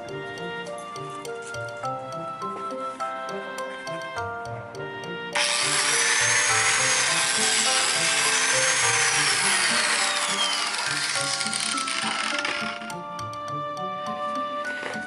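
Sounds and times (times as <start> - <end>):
background music: 0.0 - 15.0
biscuit joiner cutting wood: 5.4 - 13.2.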